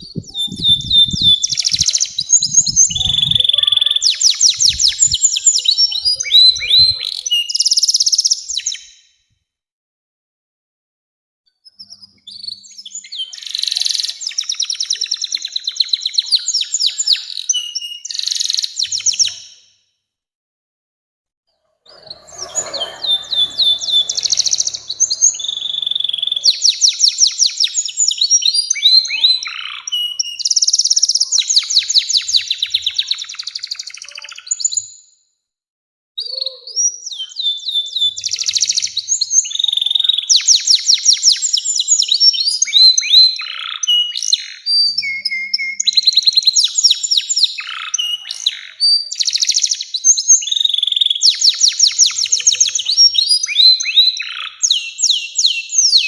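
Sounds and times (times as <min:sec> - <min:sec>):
canary singing trills: 0:00.0 - 0:08.9, 0:21.6 - 0:34.9.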